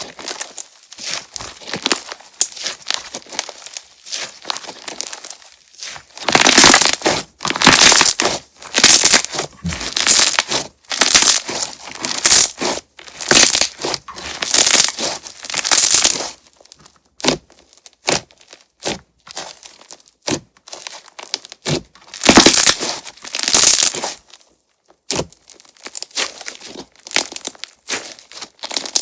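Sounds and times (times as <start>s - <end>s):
slime crackling: 0.2s - 18.6s, 19.3s - 24.3s.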